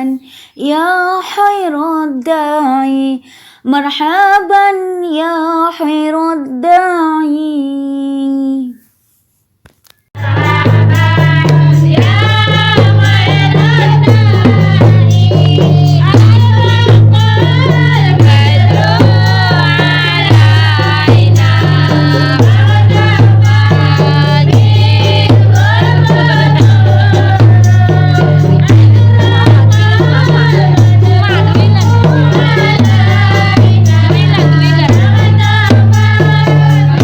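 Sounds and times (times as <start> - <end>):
hand percussion: 10.2 - 37.0.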